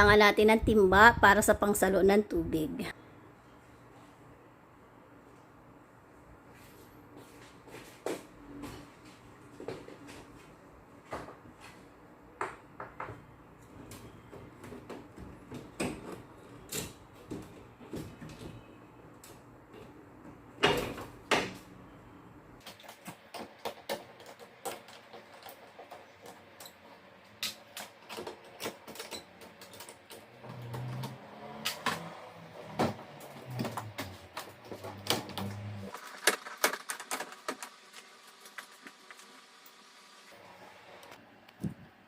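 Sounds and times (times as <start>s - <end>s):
hard parts clicking and knocking: 22.6s - 37.8s.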